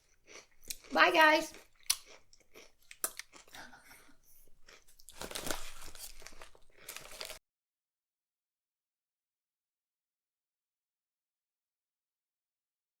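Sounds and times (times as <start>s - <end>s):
crunching snacks: 0.1s - 7.4s.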